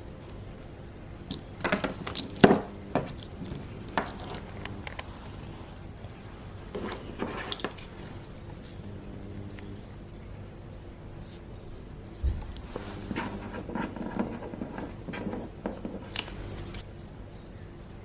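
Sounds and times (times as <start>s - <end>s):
objects clinking and knocking: 1.2s - 5.1s.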